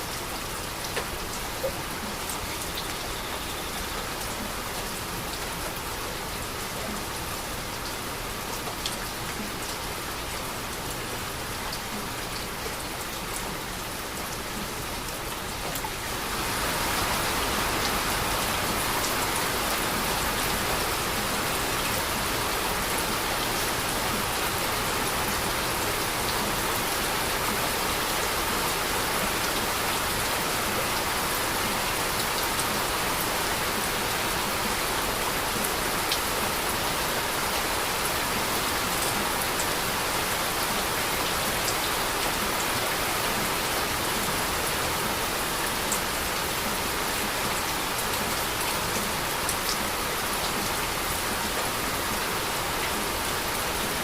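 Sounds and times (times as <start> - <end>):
heavy rain hissing: 15.1 - 54.0.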